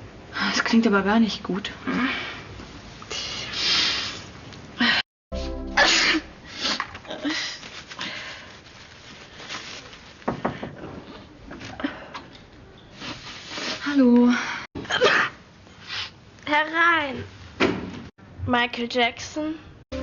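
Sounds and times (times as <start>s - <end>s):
background music: 5.3s - 6.8s
person sneezing: 5.8s - 7.4s.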